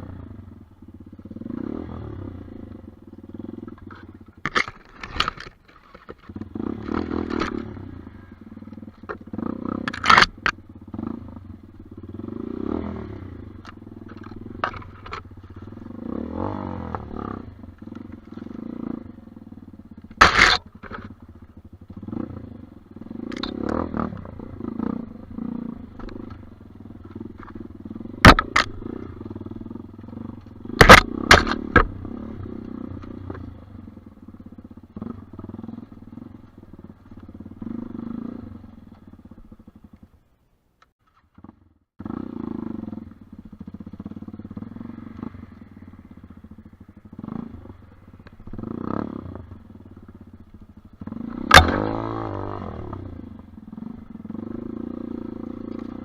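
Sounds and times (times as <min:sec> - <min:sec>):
dirt bike engine running: 0:00.0 - 0:40.3, 0:40.9 - 0:56.0
sharp loud knocks and clatters: 0:28.2 - 0:28.8.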